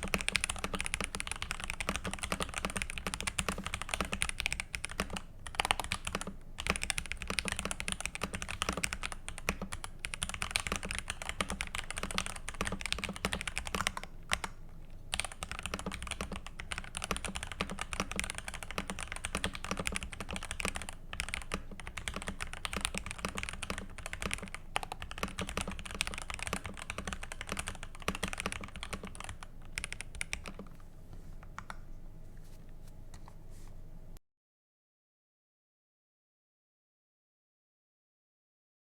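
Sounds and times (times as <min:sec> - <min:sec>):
mechanical keyboard typing: 0:00.0 - 0:30.7.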